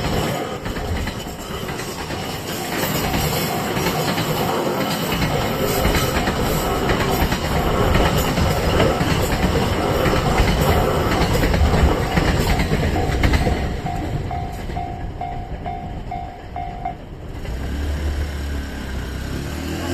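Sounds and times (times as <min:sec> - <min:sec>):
train wheels clattering on rails: 0:00.0 - 0:19.8
crossing warning bell ringing: 0:09.2 - 0:17.7.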